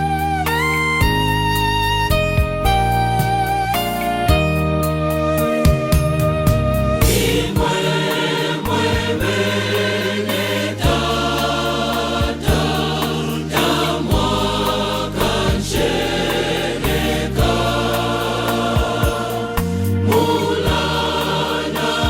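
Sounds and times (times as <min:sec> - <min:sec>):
steady beat with bass line: 0:05.4 - 0:10.2, 0:10.8 - 0:22.0
choir singing gospel: 0:07.0 - 0:22.0.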